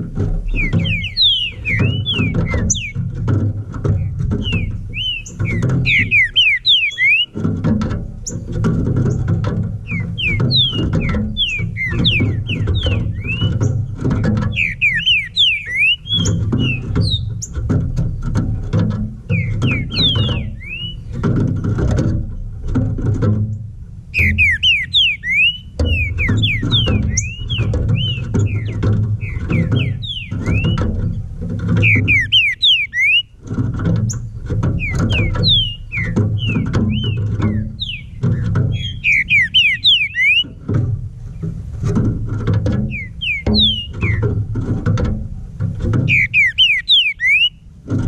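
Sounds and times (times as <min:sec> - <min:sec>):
bird singing slurred whistles: 0:00.4 - 0:03.0, 0:04.0 - 0:07.4, 0:09.8 - 0:17.6, 0:19.3 - 0:21.2, 0:24.1 - 0:31.0, 0:31.8 - 0:33.3, 0:34.8 - 0:40.6, 0:42.9 - 0:44.3, 0:46.0 - 0:47.6.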